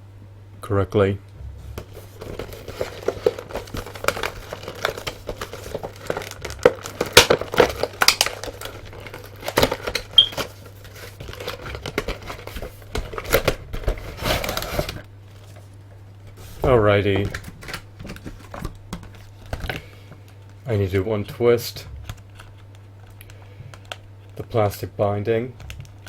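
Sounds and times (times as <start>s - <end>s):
plastic packaging crinkling: 1.8s - 20.6s.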